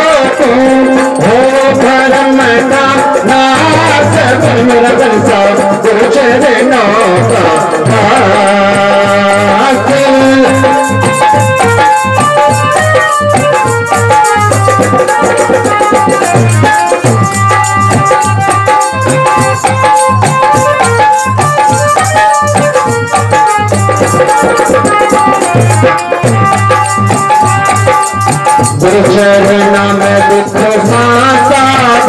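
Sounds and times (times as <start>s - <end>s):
shaken rattle percussion: 0.0s - 32.0s
steady drum beat: 0.0s - 32.0s
melody of held notes: 9.8s - 28.9s.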